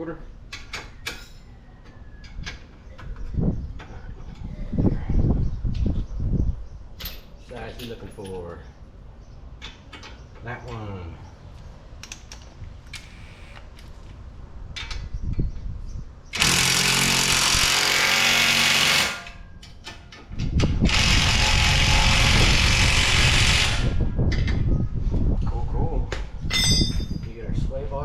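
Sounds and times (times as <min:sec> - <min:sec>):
impact wrench hammering: 0:16.4 - 0:19.4.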